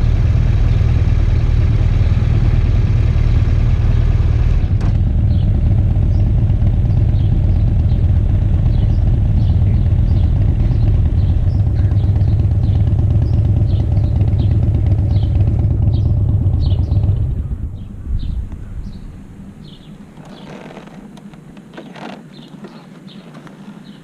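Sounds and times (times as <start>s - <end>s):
motorcycle engine idling: 0.0s - 24.0s
faint bird chirps: 5.3s - 21.0s, 21.7s - 24.0s.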